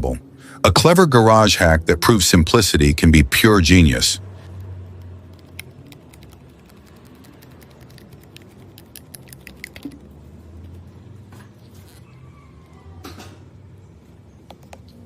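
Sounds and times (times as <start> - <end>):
low steady hum: 0.0 - 12.2
small clicks and ticks: 4.5 - 10.1.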